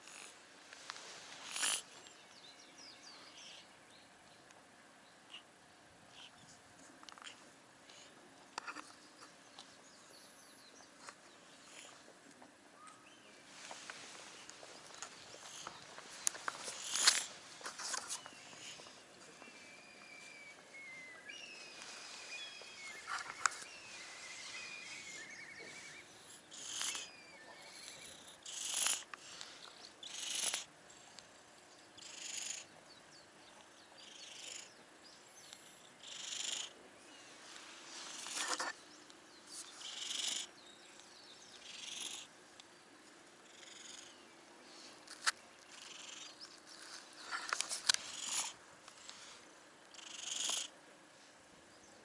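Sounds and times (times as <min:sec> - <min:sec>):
birds singing: 0:01.9 - 0:05.5, 0:12.8 - 0:13.4, 0:17.9 - 0:37.4, 0:38.0 - 0:47.0.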